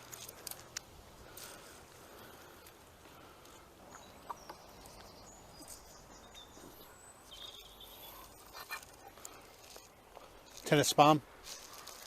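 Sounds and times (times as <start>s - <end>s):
high bird chirps: 3.9s - 8.9s.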